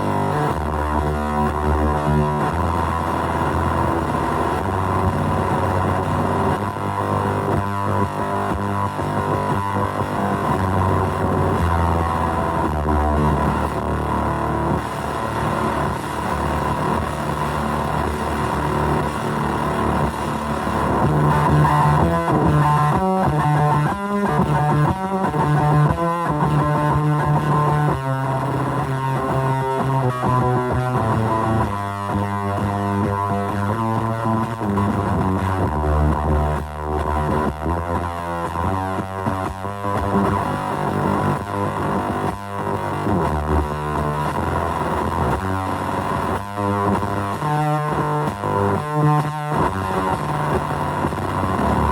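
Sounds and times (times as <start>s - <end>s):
distorted electric guitar: 0.0s - 51.9s.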